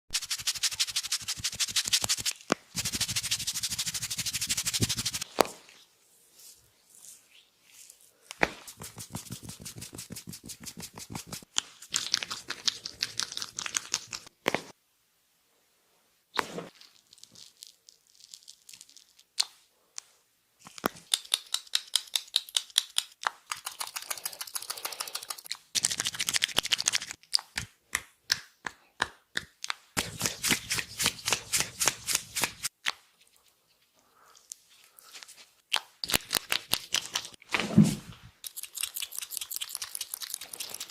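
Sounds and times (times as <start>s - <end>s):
hands slapping and tapping: 0.4s - 5.6s, 8.3s - 14.7s, 19.4s - 33.1s, 35.7s - 37.6s.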